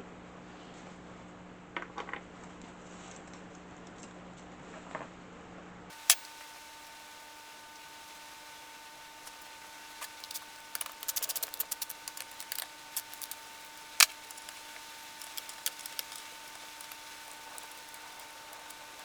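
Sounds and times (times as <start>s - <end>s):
faint steady whine: 5.9s - 19.0s.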